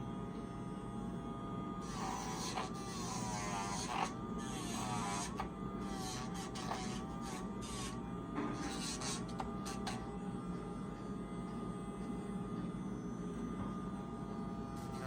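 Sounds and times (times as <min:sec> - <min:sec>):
pet nail grinder buzzing: 0:01.8 - 0:10.1.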